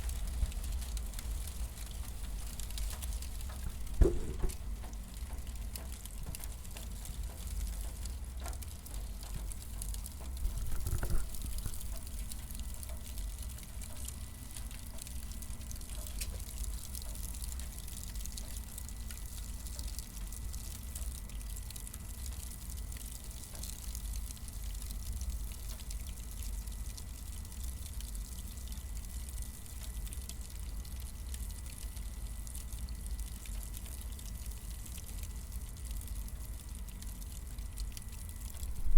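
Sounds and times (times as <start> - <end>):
cardboard burning: 0.0 - 14.2
small crackles: 0.0 - 38.9.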